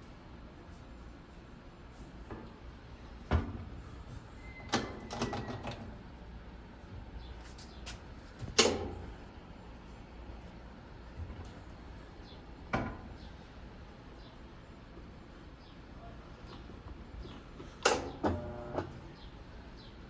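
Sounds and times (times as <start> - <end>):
knocks and clicks of installation work: 7.9 - 9.0, 16.5 - 19.0.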